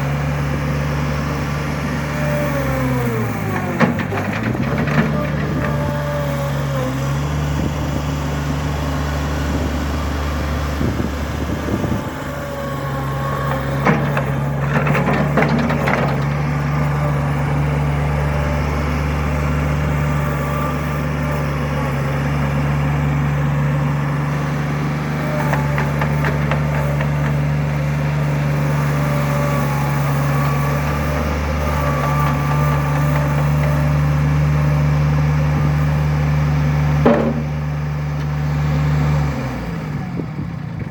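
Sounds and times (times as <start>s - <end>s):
diesel engine running: 0.0s - 40.9s
clattering: 3.6s - 5.9s, 13.5s - 16.9s, 37.0s - 37.6s.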